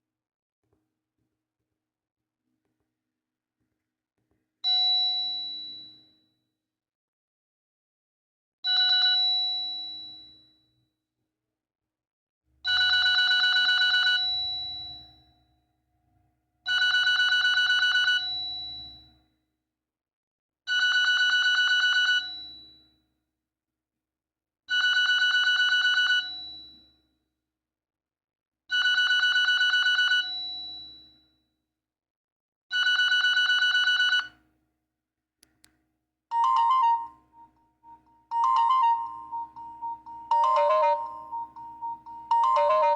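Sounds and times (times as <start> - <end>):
different phone ringtone: 8.7 - 9.8, 12.7 - 15.1, 16.7 - 18.8, 24.8 - 26.5, 28.8 - 30.4, 32.8 - 34.3, 36.3 - 42.9
fluttering electronic phone ringtone: 36.3 - 42.9.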